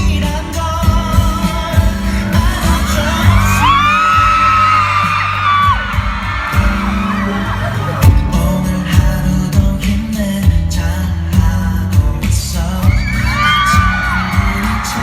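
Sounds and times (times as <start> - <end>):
pop song with singing: 0.0 - 15.0
crowd screaming: 1.9 - 8.7, 12.7 - 15.0.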